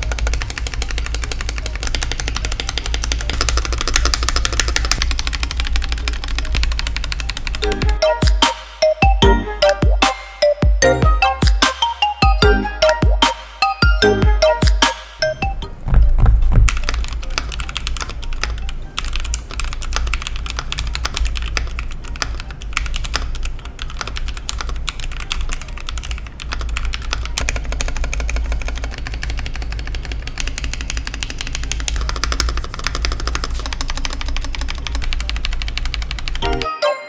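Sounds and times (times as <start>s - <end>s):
fast typing on mechanical keyboard: 0.0s - 8.2s, 16.4s - 36.7s.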